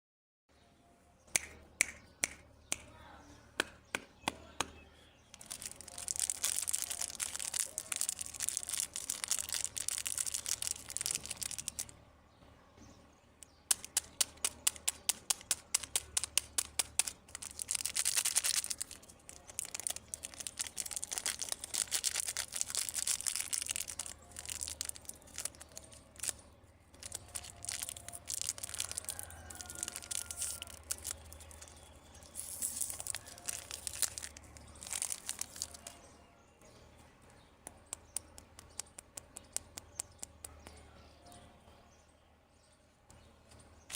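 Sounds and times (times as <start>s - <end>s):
sharp clicks and snaps: 1.3s - 2.9s, 5.3s - 12.0s, 13.4s - 36.0s, 37.6s - 40.8s
plastic wrappers crinkling and tearing: 5.2s - 11.9s, 13.7s - 36.2s.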